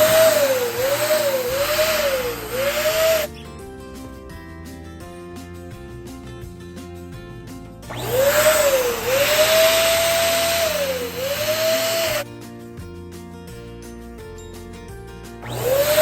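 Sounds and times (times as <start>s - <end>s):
electric pump motor whine: 0.0s - 3.4s, 7.9s - 12.2s, 15.4s - 16.0s
background music: 0.0s - 16.0s.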